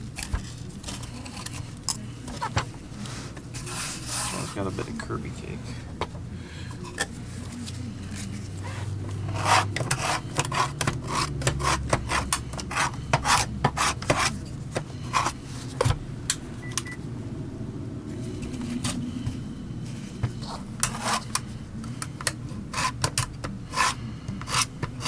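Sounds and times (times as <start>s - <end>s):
low steady hum: 0.0s - 25.0s
scraping and rubbing strokes: 2.8s - 5.1s, 7.1s - 15.8s, 19.8s - 21.6s, 22.7s - 25.0s.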